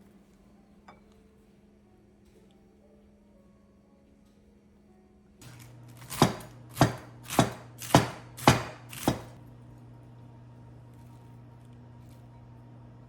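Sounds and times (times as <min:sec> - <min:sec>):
knife chopping on cutting board: 0:06.0 - 0:09.4.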